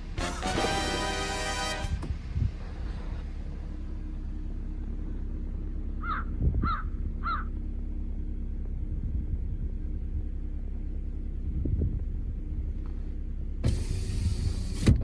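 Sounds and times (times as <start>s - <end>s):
steady low rumble: 0.0s - 15.0s
crow cawing: 6.0s - 7.5s.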